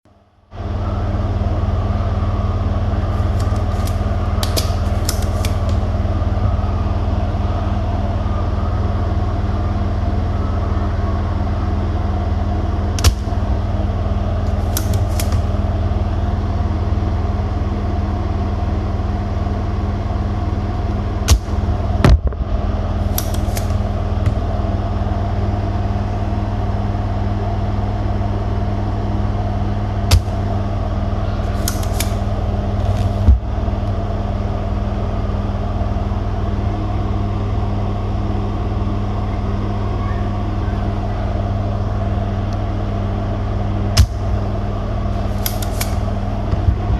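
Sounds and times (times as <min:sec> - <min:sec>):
mechanical hum: 0:00.1 - 0:46.9
sharp small clicks: 0:03.2 - 0:05.8, 0:14.5 - 0:15.5, 0:23.1 - 0:23.8, 0:31.5 - 0:32.3, 0:45.4 - 0:46.0.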